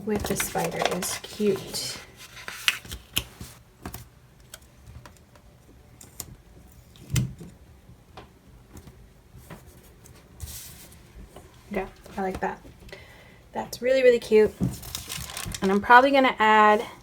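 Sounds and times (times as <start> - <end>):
paper rustle: 0.1 - 3.6, 14.6 - 16.0
paper pages clicking and tapping: 0.1 - 5.4, 14.7 - 15.9.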